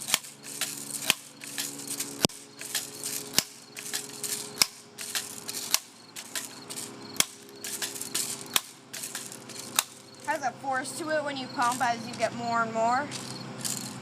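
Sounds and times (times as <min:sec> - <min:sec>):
air rifle pump clacking: 0:00.0 - 0:10.4.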